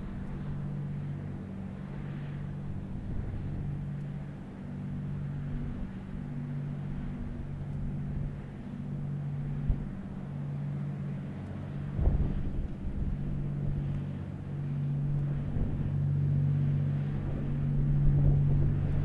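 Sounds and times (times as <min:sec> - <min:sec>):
ship diesel engines humming: 0:00.0 - 0:19.0.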